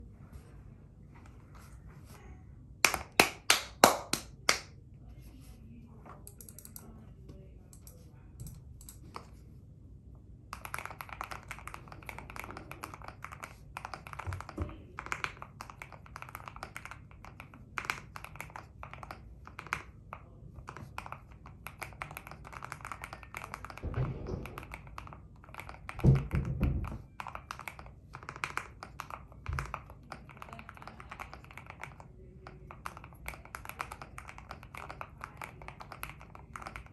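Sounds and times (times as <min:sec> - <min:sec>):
mechanical keyboard typing: 0:06.2 - 0:06.9, 0:07.8 - 0:09.3, 0:10.5 - 0:36.9.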